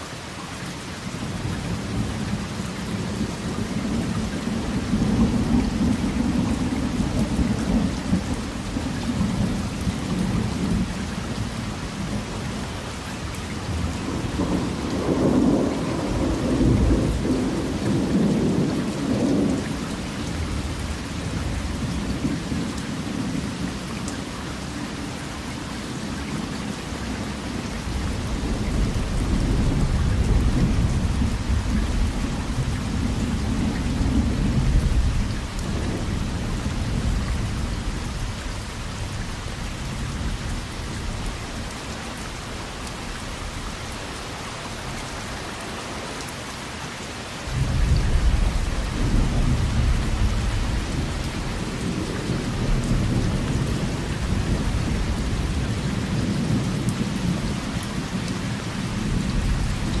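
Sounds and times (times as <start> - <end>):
heavy rain: 0.0 - 60.0
rolling thunder: 13.7 - 22.6, 28.0 - 41.2, 47.5 - 60.0.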